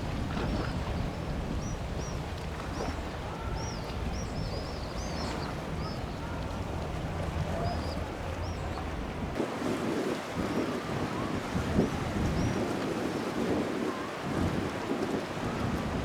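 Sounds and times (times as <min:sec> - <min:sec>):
low engine hum: 0:00.0 - 0:09.4
small birds chirping: 0:01.6 - 0:06.6, 0:07.6 - 0:08.9.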